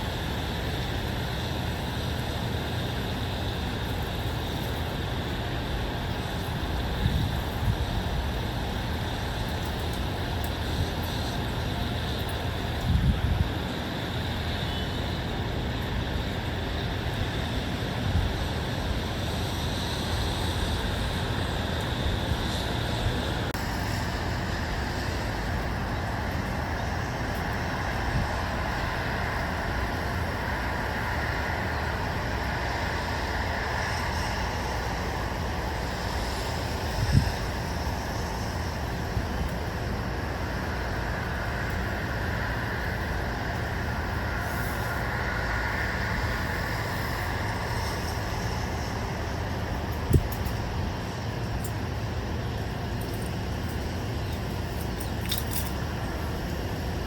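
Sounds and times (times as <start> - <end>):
distant road traffic: 0.0 - 57.0.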